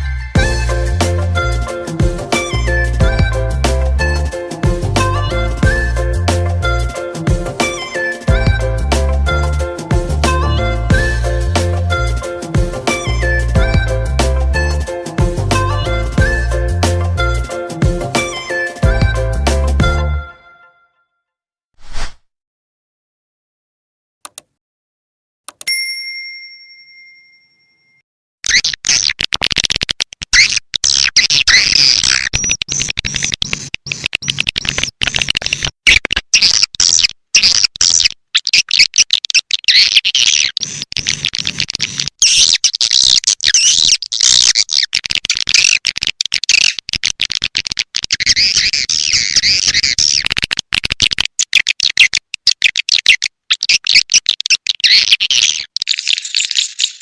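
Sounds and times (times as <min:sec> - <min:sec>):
short ringing tone: 0:25.7 - 0:28.0.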